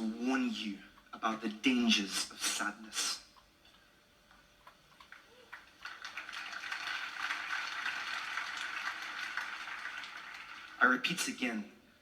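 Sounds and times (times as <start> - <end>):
crowd applauding: 5.1 - 11.3.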